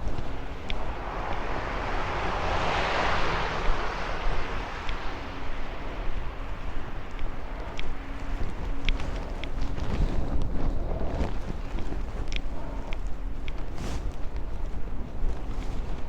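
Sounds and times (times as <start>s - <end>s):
vehicle driving past: 0.0s - 8.8s
wind and street noise: 0.0s - 16.0s.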